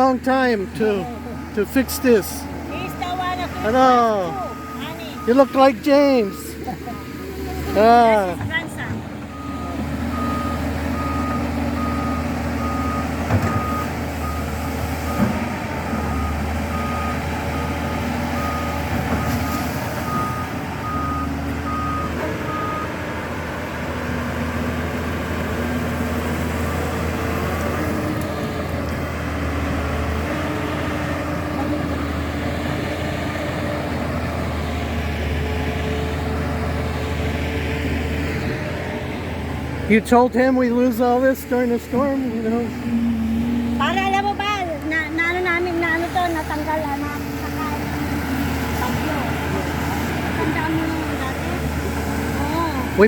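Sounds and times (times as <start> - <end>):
reversing alarm beeping: 0.0 - 8.5, 9.3 - 23.0
backhoe engine running: 0.0 - 53.0.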